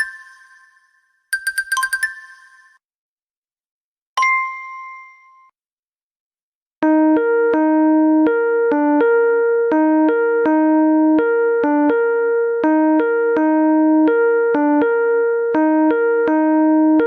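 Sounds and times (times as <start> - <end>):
electronic ringtone melody: 0.0 - 2.8.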